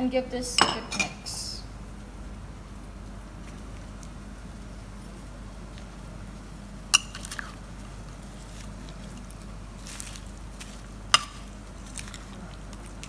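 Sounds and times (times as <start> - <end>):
spoon clinking against pot: 0.6 - 1.2, 11.2 - 11.5
spoon stirring wet food: 7.0 - 13.0.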